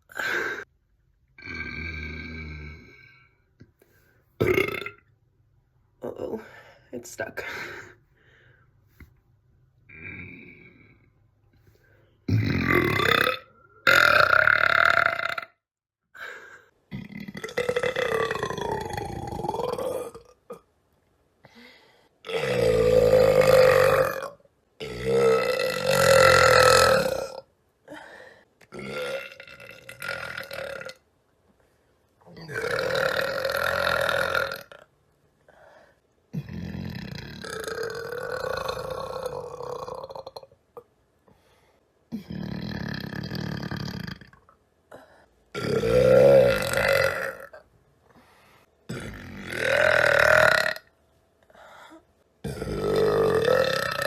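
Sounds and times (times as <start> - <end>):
woman belching: 4.4 - 5.1, 12.3 - 15.6, 16.9 - 20.7, 22.3 - 27.5, 28.7 - 31.0, 32.3 - 34.9, 36.4 - 40.6, 45.5 - 47.6, 48.9 - 50.9, 52.4 - 54.0.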